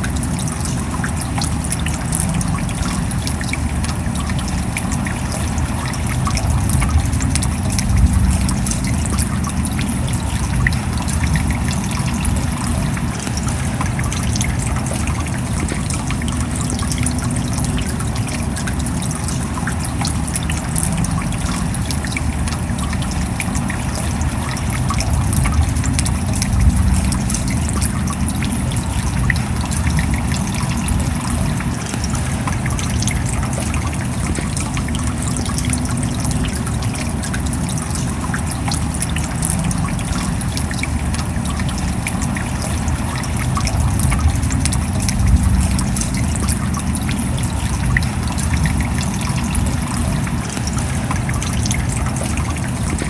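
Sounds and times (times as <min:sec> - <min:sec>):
steady rain falling: 0:00.0 - 0:53.0.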